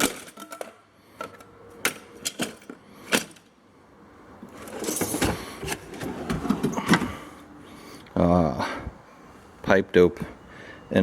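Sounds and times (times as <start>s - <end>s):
toolbox drawer rolling: 4.5s - 7.3s.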